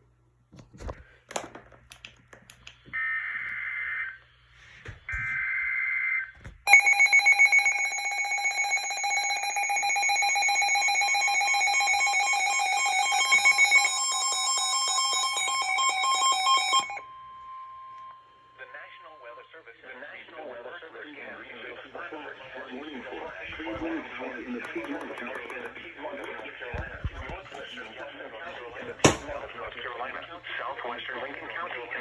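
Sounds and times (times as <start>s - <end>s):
rapidly pulsing alarm: 5.0s - 19.4s.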